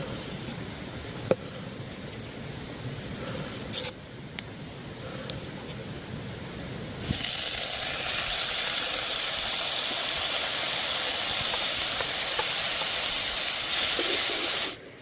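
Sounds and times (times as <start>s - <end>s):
food sizzling in a pan: 7.0s - 14.8s.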